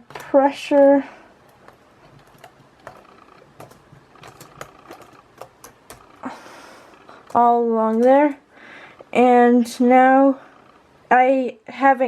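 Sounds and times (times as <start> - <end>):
plastic keyboard clicks and taps: 1.5 - 6.2.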